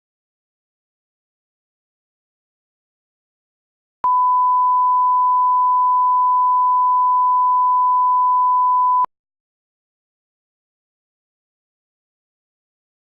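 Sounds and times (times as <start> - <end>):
electronic sine-wave beep: 4.0 - 9.1.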